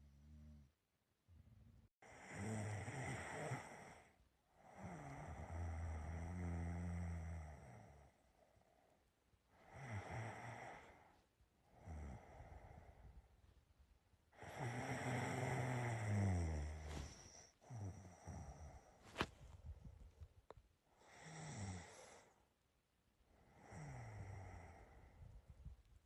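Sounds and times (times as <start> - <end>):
person snoring: 2.0 - 8.1, 9.6 - 11.1, 11.8 - 13.0, 14.4 - 19.0, 21.0 - 22.4, 23.5 - 25.1.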